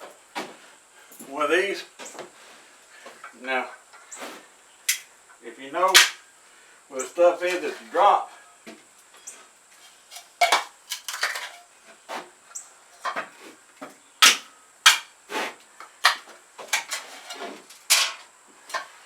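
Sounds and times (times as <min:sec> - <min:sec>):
hard objects clicking and knocking: 0:10.1 - 0:11.7, 0:13.0 - 0:13.3, 0:14.2 - 0:15.1, 0:15.8 - 0:18.9.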